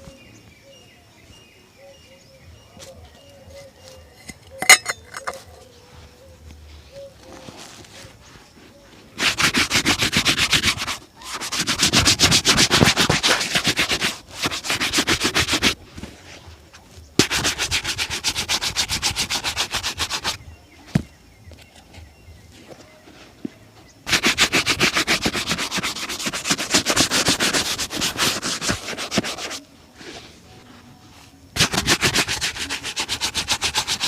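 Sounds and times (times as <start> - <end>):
shoe being rubbed: 7.2 - 20.4, 24.0 - 34.0.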